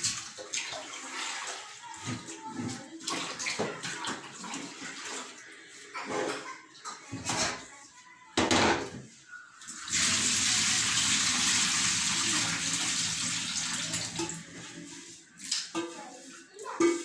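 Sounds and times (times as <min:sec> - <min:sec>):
water pouring: 0:00.0 - 0:06.4, 0:09.6 - 0:16.4
water splashing in a basin: 0:00.0 - 0:07.1, 0:09.6 - 0:17.0.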